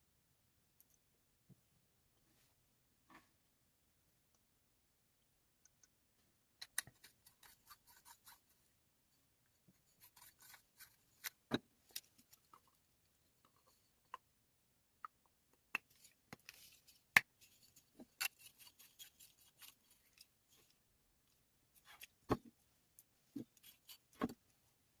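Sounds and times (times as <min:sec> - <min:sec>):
small clicks taps and scrapes: 0:05.6 - 0:08.6, 0:09.4 - 0:14.3.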